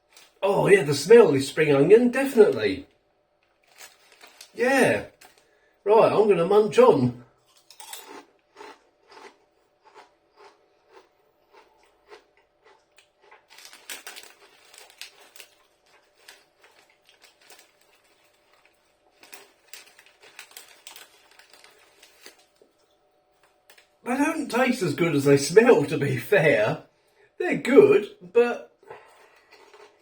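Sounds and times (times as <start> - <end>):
crisps crunching: 0.0 - 2.8, 3.4 - 5.7, 6.5 - 22.8, 29.0 - 30.0.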